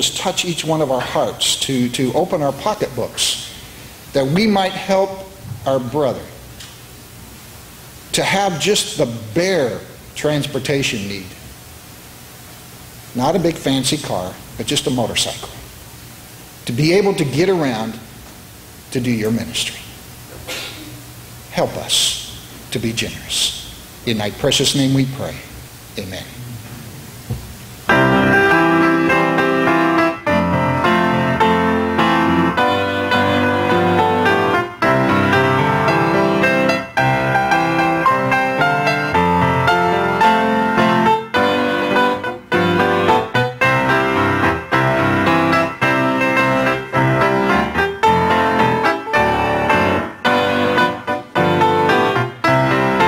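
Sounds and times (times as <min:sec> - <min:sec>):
piano playing chords and melody: 0:27.8 - 0:53.0.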